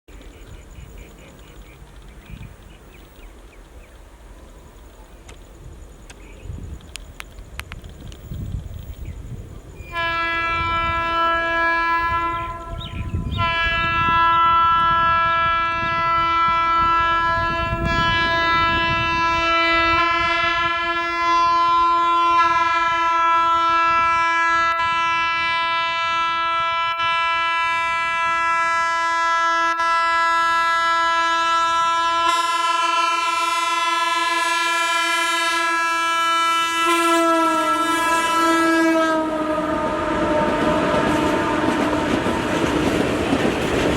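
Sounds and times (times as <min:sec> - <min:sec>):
train rumbling past: 0:00.1 - 0:43.9
train horn long blasts: 0:09.8 - 0:43.1.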